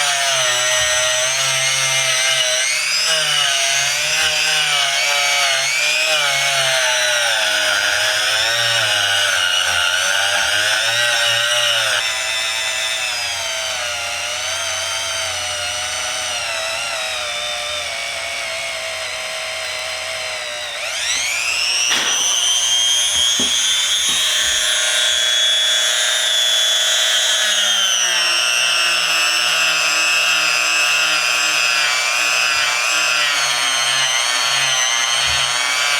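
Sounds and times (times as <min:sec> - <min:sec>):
small power tool motor running: 0:00.0 - 0:35.9.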